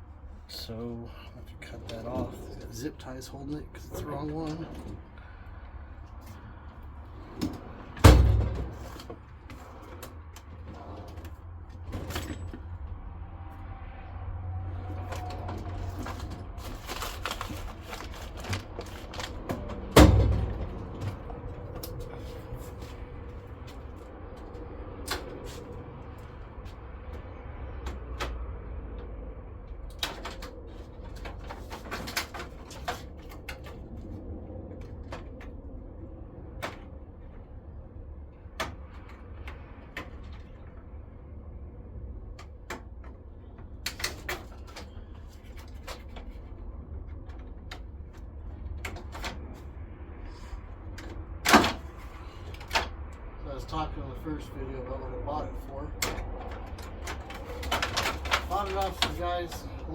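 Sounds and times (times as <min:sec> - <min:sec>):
steady low rumble: 0:00.0 - 0:59.9
hand tools clicking and rattling: 0:56.0 - 0:59.9.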